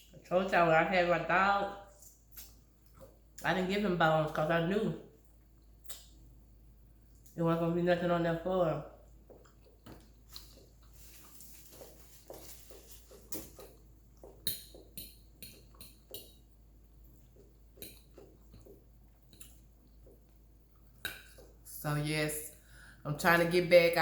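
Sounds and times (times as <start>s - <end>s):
wet mouth clicks and smacks: 2.0s - 3.2s, 5.6s - 6.2s, 17.2s - 21.6s
person chewing meat off bone: 9.2s - 16.3s, 17.1s - 21.6s.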